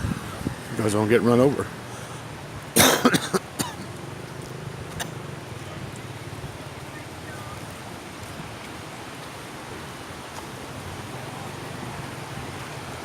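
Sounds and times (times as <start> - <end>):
rushing background noise: 0.0 - 13.0.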